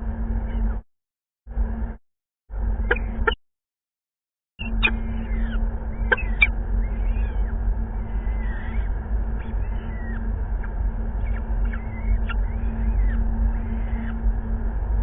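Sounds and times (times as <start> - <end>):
low hum and hiss: 0.0 - 0.8, 1.5 - 3.4, 4.6 - 15.0
falcon chicks calling: 2.8 - 3.4, 4.6 - 14.5.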